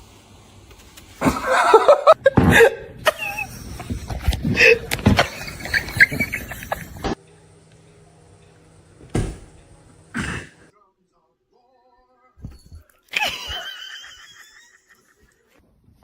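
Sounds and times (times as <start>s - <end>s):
loud bursts of laughter: 1.2s - 7.1s.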